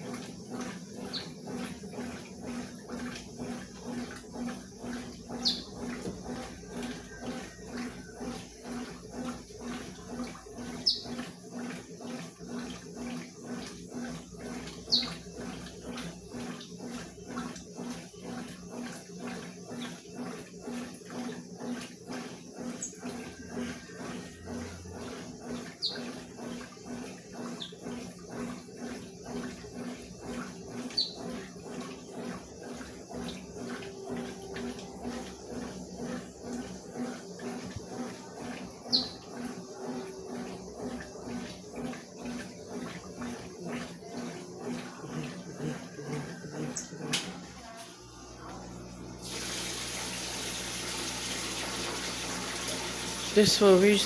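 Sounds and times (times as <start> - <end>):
washing machine motor humming: 0.0 - 54.0
water swishing in washer: 0.0 - 54.0
water sloshing: 24.9 - 47.9.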